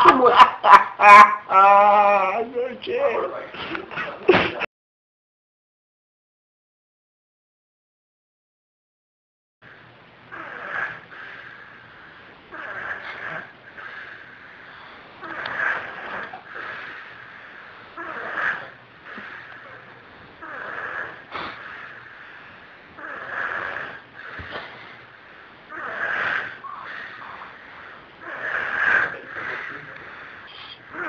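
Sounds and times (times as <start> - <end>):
man snoring: 18.0 - 19.8, 20.4 - 21.9, 23.0 - 24.4, 25.7 - 27.5, 28.2 - 31.0.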